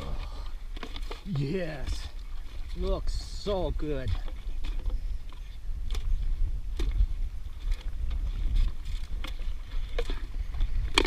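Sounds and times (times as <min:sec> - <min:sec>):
water lapping against kayak hull: 0:00.0 - 0:11.0
wind rumble on microphone: 0:00.0 - 0:11.0.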